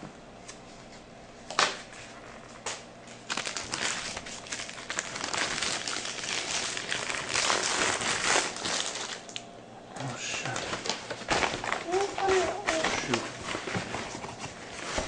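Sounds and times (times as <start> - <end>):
toddler spluttering noise: 11.9 - 13.3.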